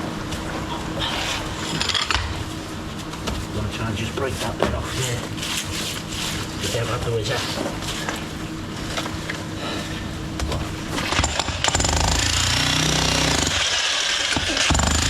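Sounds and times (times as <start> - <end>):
jackhammer hammering: 11.0 - 15.0.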